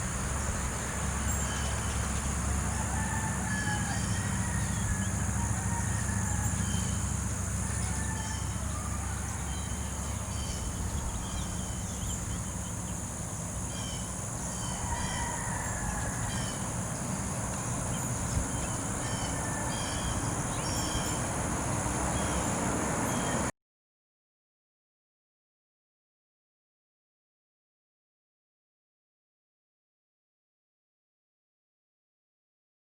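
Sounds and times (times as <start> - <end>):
insect drone: 0.0 - 23.5
bird chirps: 13.7 - 15.2, 16.2 - 21.4.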